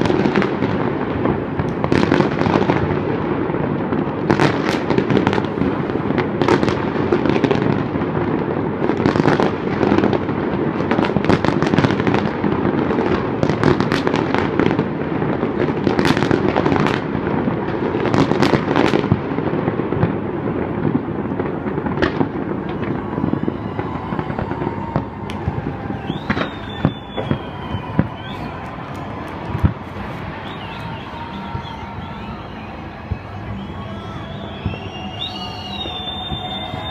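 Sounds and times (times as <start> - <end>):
fireworks bangs and crackling: 0.0 - 36.9
high firework whistle: 21.8 - 36.9.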